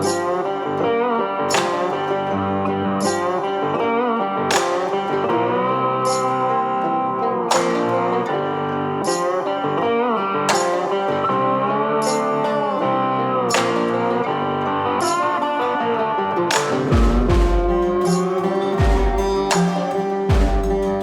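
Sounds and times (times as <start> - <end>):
guitar with bending notes: 0.0 - 21.0
beat: 7.5 - 12.5, 16.5 - 21.0.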